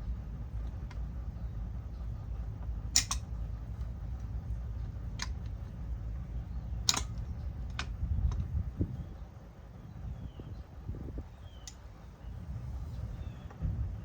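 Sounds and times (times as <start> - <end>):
steady low rumble: 0.0 - 14.0
sharp clicks: 2.9 - 3.4, 6.8 - 8.6, 11.6 - 11.9.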